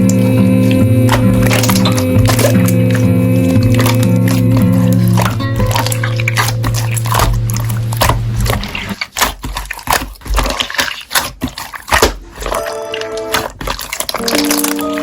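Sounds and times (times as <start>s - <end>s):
background song: 0.0s - 7.0s, 14.2s - 15.0s
slime squished by hand: 0.0s - 15.0s.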